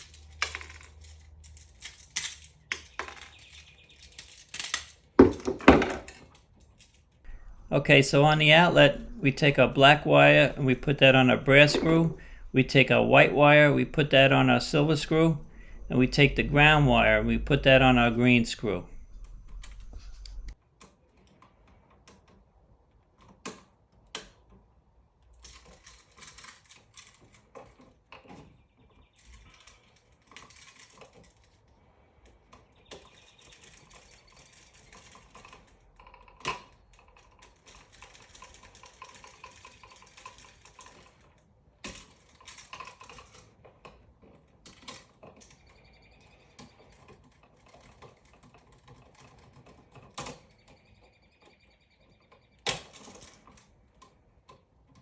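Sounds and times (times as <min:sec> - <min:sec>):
hand tools clicking and scraping: 0:07.3 - 0:20.6.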